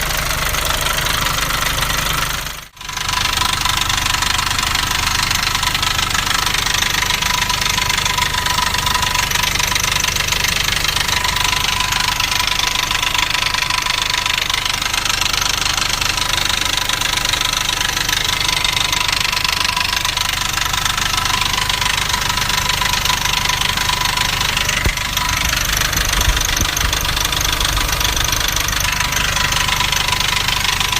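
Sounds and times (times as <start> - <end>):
diesel engine idling with clatter: 0.0 - 30.9
short low rumble: 24.5 - 29.4.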